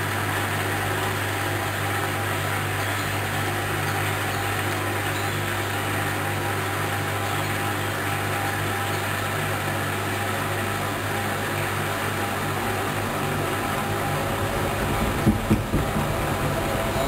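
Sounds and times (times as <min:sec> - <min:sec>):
washing machine spinning: 0:00.0 - 0:17.0.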